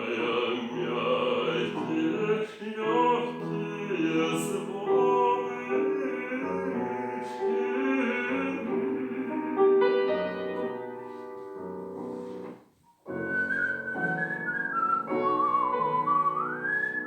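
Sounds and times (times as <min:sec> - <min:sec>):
piano accompaniment: 0:00.0 - 0:17.0
high wavering whistling: 0:13.1 - 0:17.0.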